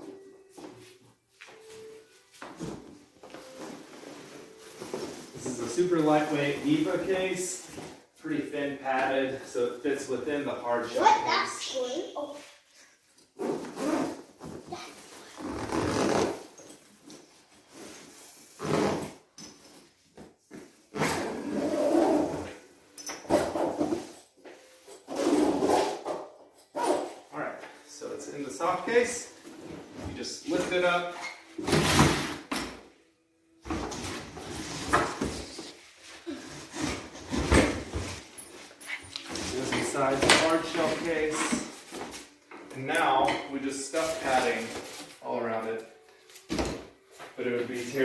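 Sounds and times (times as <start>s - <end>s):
soft bag rubbing and rustling: 0.7s - 8.2s, 11.7s - 20.0s, 20.6s - 22.7s, 24.8s - 31.6s, 33.7s - 42.4s
padded bag fabric rubbing: 15.0s - 16.6s, 17.7s - 19.2s, 20.9s - 22.5s.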